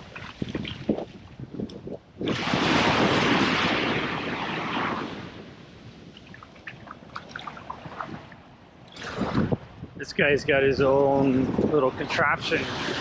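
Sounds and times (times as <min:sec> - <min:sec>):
wave breaking on beach: 0:02.2 - 0:06.0, 0:12.4 - 0:13.0.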